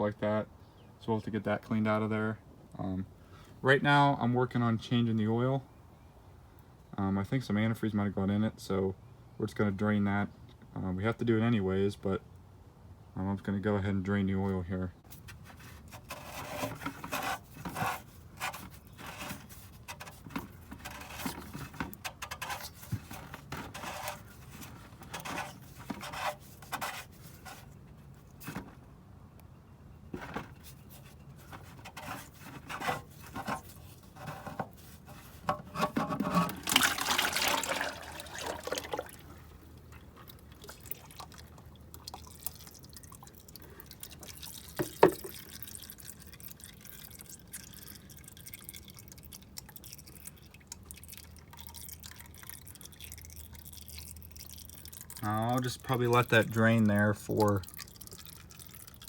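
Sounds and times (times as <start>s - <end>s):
oil pouring out: 15.1s - 28.8s, 30.2s - 59.0s.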